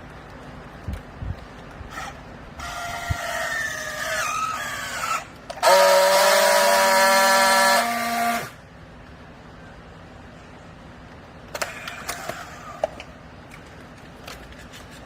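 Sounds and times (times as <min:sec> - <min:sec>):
loud high-pitched whine: 0:01.9 - 0:08.9.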